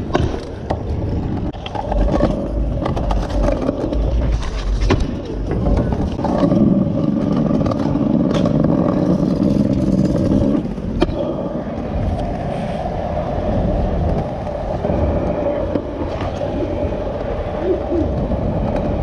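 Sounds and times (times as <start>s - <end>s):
scooter wheels rolling on concrete: 0.0s - 19.0s.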